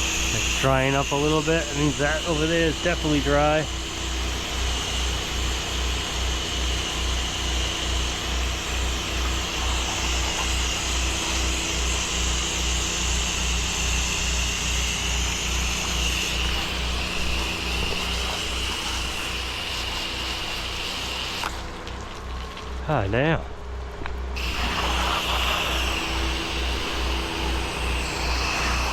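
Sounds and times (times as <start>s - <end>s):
water spraying hiss: 0.0s - 22.8s, 24.4s - 28.9s
pressure washer running: 0.0s - 28.9s.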